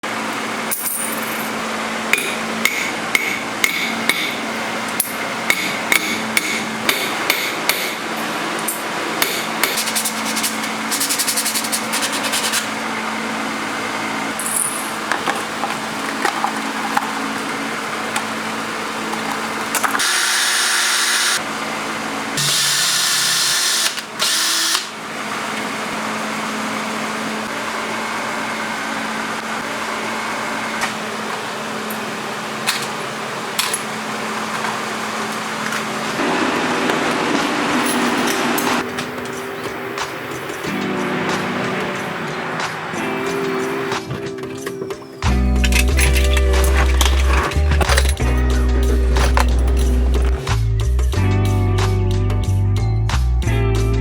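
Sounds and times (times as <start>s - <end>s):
power tool running: 0.0s - 31.9s, 35.2s - 39.2s
hammer striking coin: 0.7s - 1.6s, 14.4s - 15.1s
low hum: 45.2s - 51.0s.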